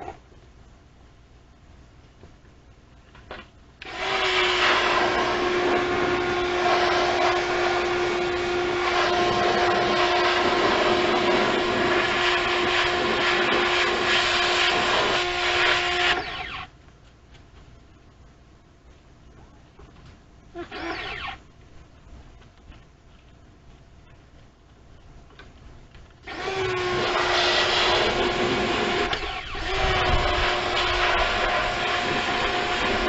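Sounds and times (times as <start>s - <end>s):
loud hissing rush: 4.4s - 15.8s, 26.9s - 33.0s.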